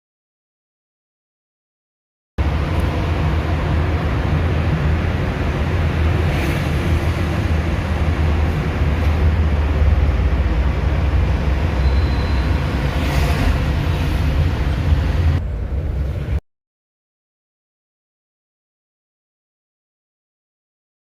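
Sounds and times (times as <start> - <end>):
loud low rumbling noise: 2.4 - 16.4.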